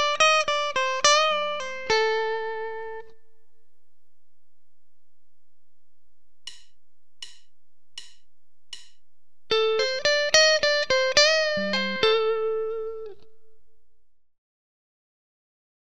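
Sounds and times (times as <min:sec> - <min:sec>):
guitar lead lick with string bends: 0:00.0 - 0:03.1, 0:09.5 - 0:13.4
count-in clicks: 0:06.4 - 0:09.1.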